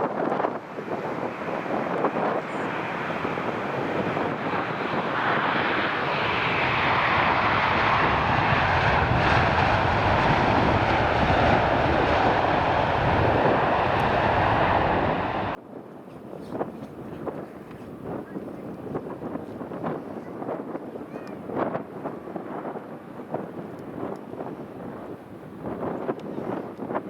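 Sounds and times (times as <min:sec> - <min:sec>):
jet engines rushing: 0:00.0 - 0:15.6.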